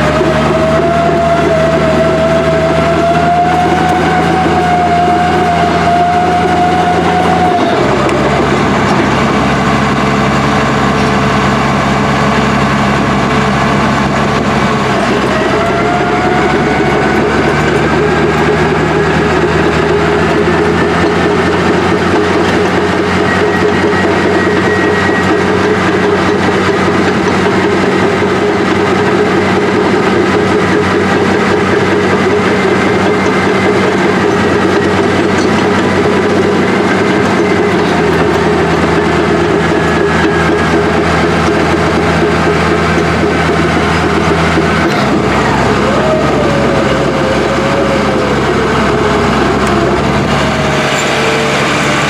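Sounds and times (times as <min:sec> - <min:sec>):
loud diesel engine running: 0:00.0 - 0:52.0.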